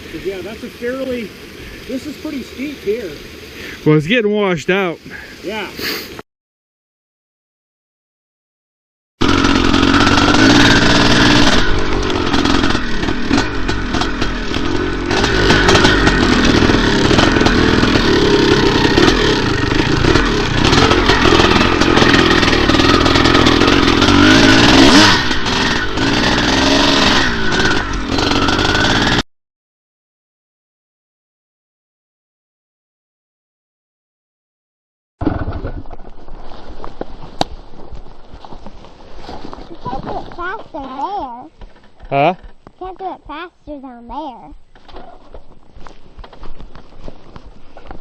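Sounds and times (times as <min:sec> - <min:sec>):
dirt bike engine revving: 0:09.2 - 0:29.2.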